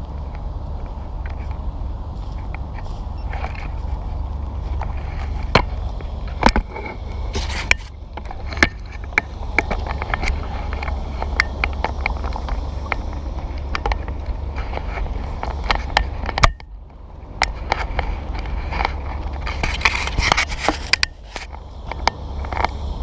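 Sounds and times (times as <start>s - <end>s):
steady low rumble: 0.0s - 23.0s.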